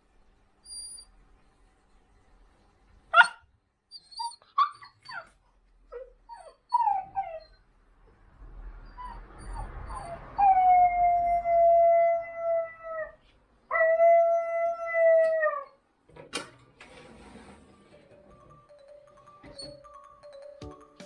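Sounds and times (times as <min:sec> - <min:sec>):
puppy yelping and whimpering: 0:00.6 - 0:01.1, 0:03.2 - 0:07.7, 0:08.8 - 0:13.1.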